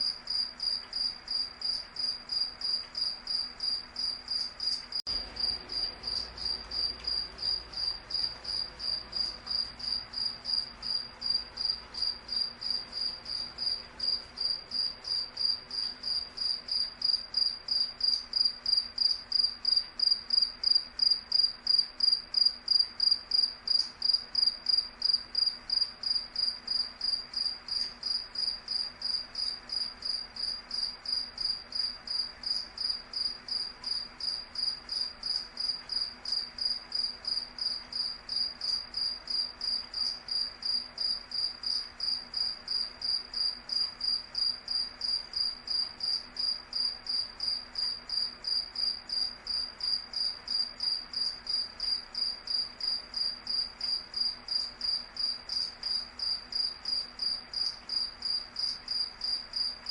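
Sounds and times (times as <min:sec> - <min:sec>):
cricket chirping: 0:00.0 - 0:59.9.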